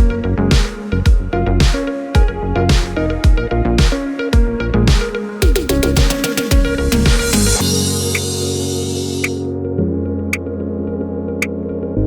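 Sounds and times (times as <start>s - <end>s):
deep kick drums: 0.0s - 7.5s.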